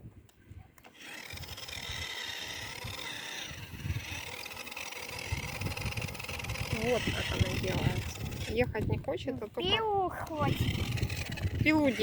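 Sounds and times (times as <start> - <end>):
toy car electric motor whining: 0.8 - 12.0.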